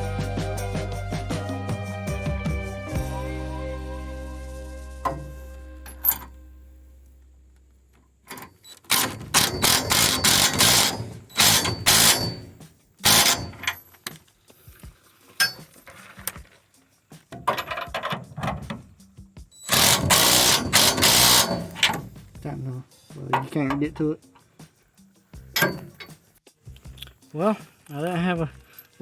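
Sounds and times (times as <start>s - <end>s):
socket ratchet clicking: 8.3s - 14.2s, 19.6s - 22.2s.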